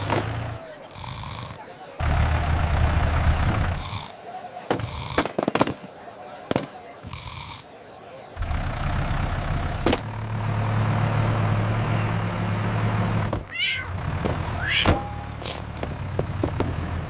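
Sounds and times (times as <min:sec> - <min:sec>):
tractor engine running: 0:00.0 - 0:04.1, 0:08.4 - 0:17.0
cat yowling: 0:13.5 - 0:13.9, 0:14.6 - 0:15.2
sharp thunk: 0:14.2 - 0:15.1.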